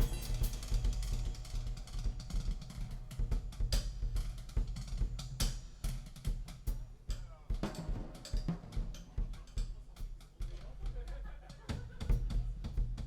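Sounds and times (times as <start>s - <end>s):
deep sustained bass: 0.0s - 4.6s
drum kit beat: 0.0s - 13.0s.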